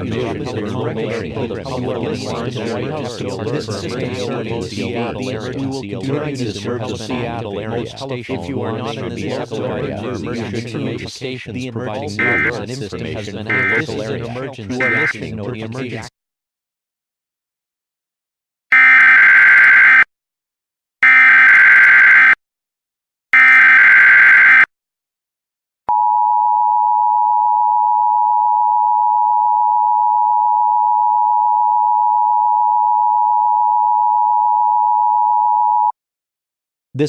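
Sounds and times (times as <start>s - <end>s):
two-tone attention signal: 12.2s - 12.5s, 13.5s - 13.8s, 14.8s - 15.1s.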